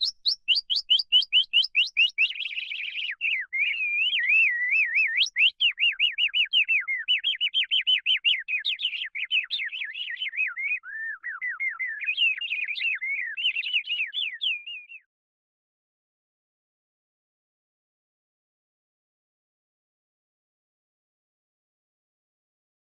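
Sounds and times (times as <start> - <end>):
canary singing: 0.0 - 15.1.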